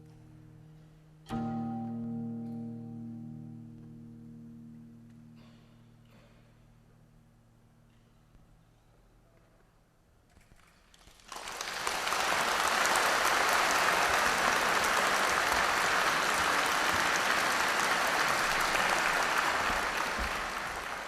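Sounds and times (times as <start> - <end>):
audience applauding: 10.6 - 21.0.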